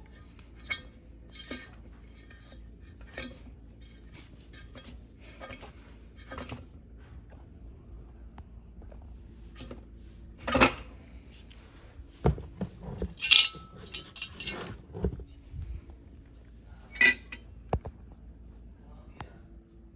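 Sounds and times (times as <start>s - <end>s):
metal hardware clinking: 13.1s - 14.8s, 16.9s - 17.4s.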